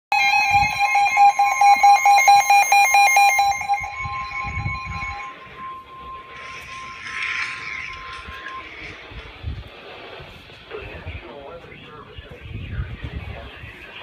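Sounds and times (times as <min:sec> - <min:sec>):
digital data tones: 0:00.1 - 0:09.6
steady warning tone: 0:00.1 - 0:10.4.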